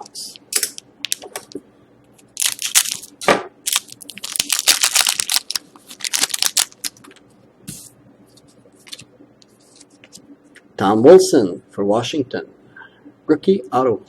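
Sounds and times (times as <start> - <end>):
wrapper tearing and crinkling: 0.6 - 1.3, 2.3 - 7.2
cards rustling: 2.2 - 7.9, 8.8 - 10.2.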